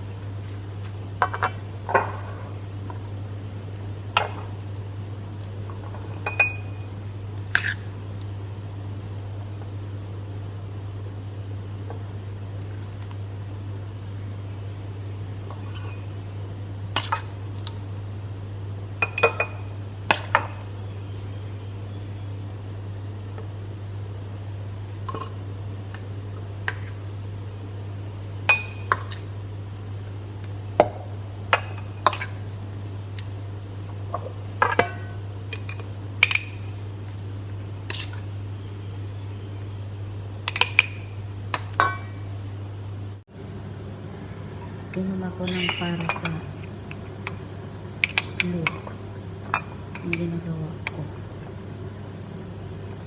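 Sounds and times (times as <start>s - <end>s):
steady low hum: 0.0s - 53.0s
utensils and glassware clinking: 1.2s - 2.7s, 5.8s - 6.9s, 15.5s - 16.1s, 34.1s - 36.8s, 40.5s - 42.2s, 44.9s - 47.4s.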